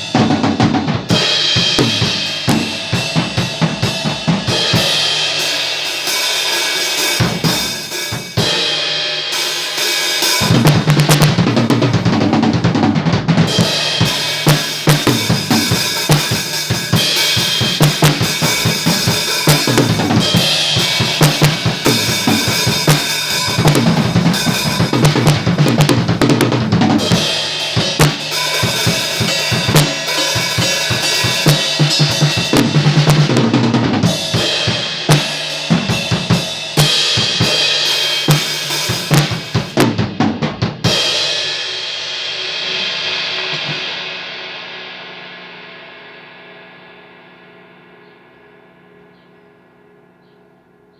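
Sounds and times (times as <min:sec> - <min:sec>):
bass drum: 0:00.0 - 0:09.2, 0:10.2 - 0:41.4
cymbals: 0:00.0 - 0:12.8, 0:13.5 - 0:40.0
snare drum: 0:00.0 - 0:40.9.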